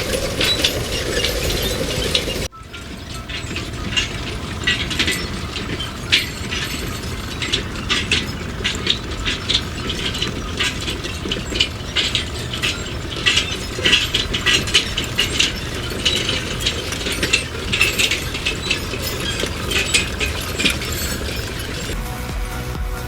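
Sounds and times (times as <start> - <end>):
mechanical clicking and clattering: 0.0 - 22.0.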